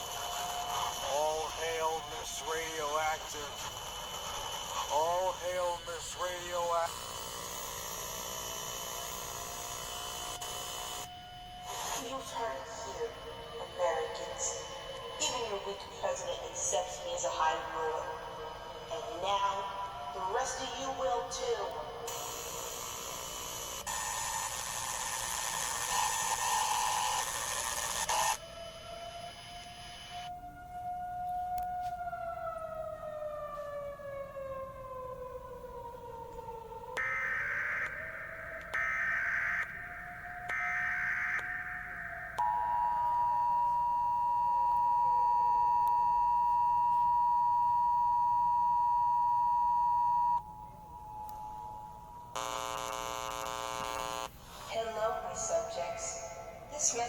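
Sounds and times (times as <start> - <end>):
loud static hiss: 0.0 - 10.8, 52.4 - 55.8
harsh buzzing tone: 0.0 - 30.3, 52.3 - 54.8
screeching data bursts: 0.0 - 30.3, 52.3 - 54.7
siren winding up: 0.0 - 54.3.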